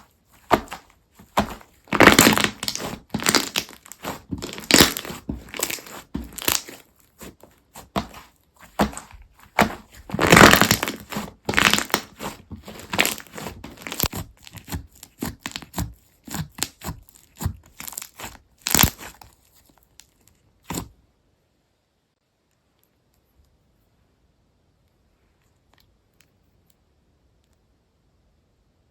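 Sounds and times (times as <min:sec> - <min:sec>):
slime crackling pops: 0:00.4 - 0:06.8, 0:07.8 - 0:19.2.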